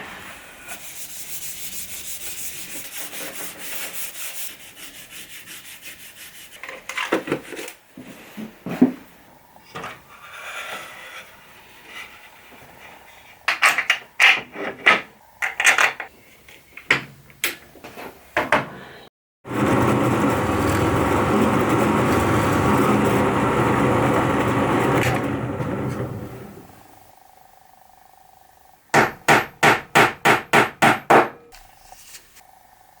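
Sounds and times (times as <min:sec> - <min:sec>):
loud machine noise: 0:19.4 - 0:26.7.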